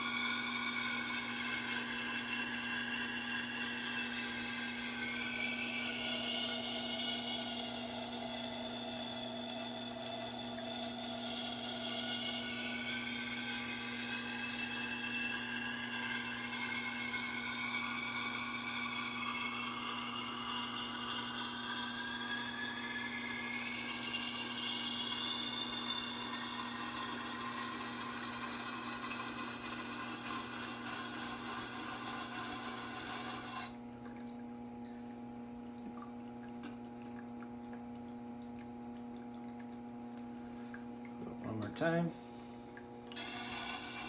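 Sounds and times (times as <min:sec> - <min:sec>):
knife grinding on sharpener: 0:00.0 - 0:33.8, 0:43.2 - 0:44.0.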